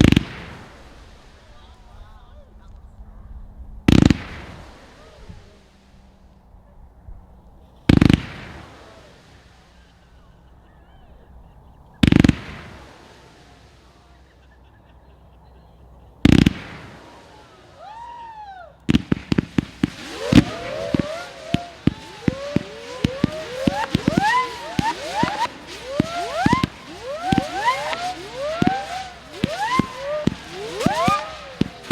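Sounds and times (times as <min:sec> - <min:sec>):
rapid firework pops: 0:00.0 - 0:01.8, 0:03.9 - 0:05.6, 0:07.8 - 0:09.8, 0:12.0 - 0:14.2, 0:16.2 - 0:18.1, 0:18.8 - 0:31.9
firework bangs: 0:00.0 - 0:02.6, 0:03.8 - 0:06.4, 0:07.6 - 0:14.4, 0:15.0 - 0:31.9
whistling fireworks: 0:00.0 - 0:31.9.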